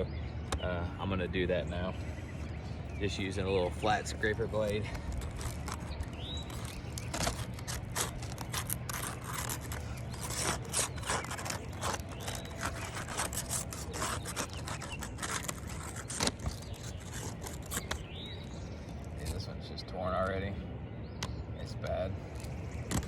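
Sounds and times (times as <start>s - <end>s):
scraper blade scraping shingles: 2.2s - 19.4s, 22.2s - 23.0s.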